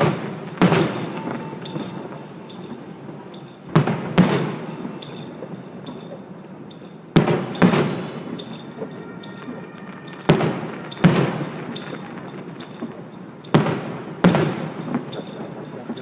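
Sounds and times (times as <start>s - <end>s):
fireworks bangs with echo: 0.0s - 16.0s.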